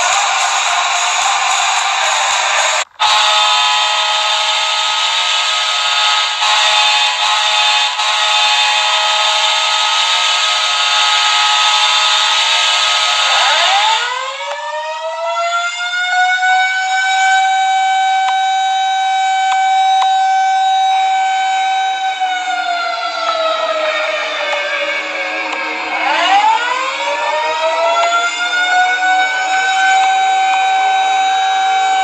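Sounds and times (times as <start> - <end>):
siren winding up: 0.0 - 32.0
goal horn chord: 3.0 - 5.1, 22.7 - 30.1.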